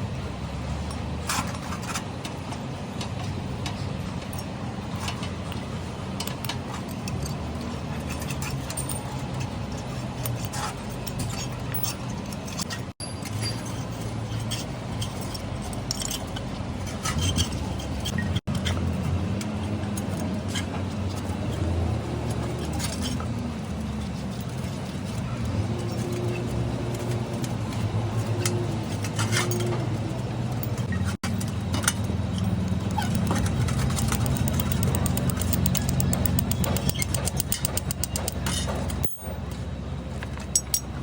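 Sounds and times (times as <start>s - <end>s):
low engine-like hum: 0.0s - 41.0s
metallic clinks and taps: 30.5s - 39.6s, 40.2s - 41.0s.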